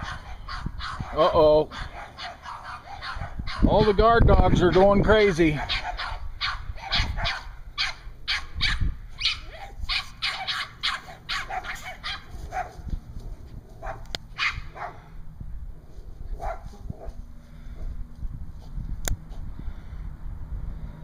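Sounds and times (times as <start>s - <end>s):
dogs barking excitedly: 0.0s - 15.2s, 16.3s - 17.2s.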